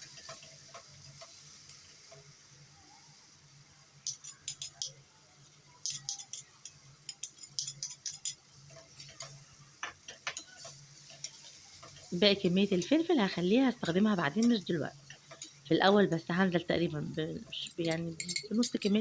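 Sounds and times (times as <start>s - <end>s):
faint sizzle: 0.0s - 19.0s
spoon clicking and scraping pan: 4.0s - 5.0s, 5.8s - 13.0s, 14.3s - 15.6s, 17.4s - 19.0s.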